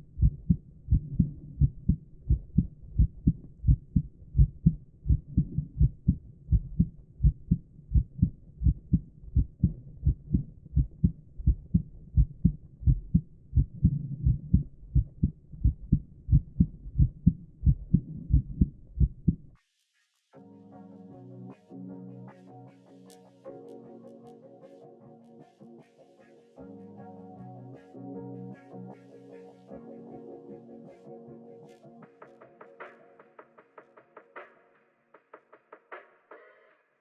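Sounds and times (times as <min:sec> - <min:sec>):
heartbeat through a stethoscope: 0:00.0 - 0:19.6.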